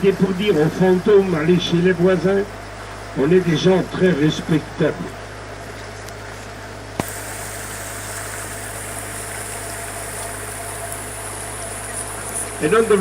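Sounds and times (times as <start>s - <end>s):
boat motor running: 0.0s - 13.0s
hiss: 7.0s - 12.7s.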